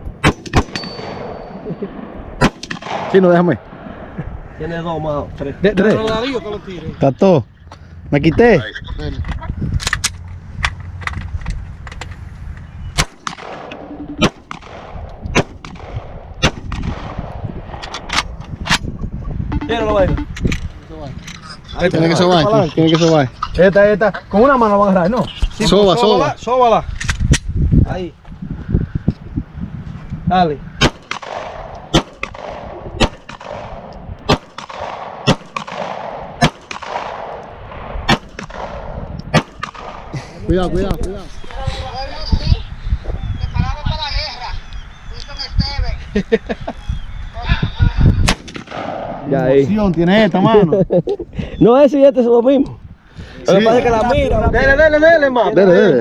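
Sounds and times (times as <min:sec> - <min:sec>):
loud gunshots: 0:02.4 - 0:03.9, 0:13.0 - 0:17.3, 0:30.8 - 0:40.1, 0:48.3 - 0:49.2
faint gunshots: 0:30.8 - 0:40.1, 0:48.3 - 0:49.2.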